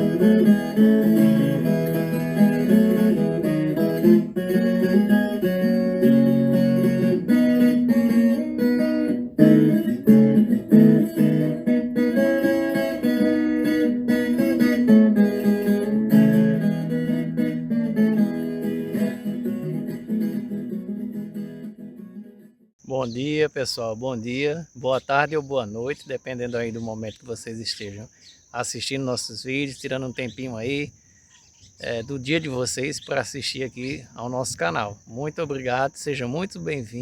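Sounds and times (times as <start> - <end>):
acoustic guitar music: 0.0 - 27.7.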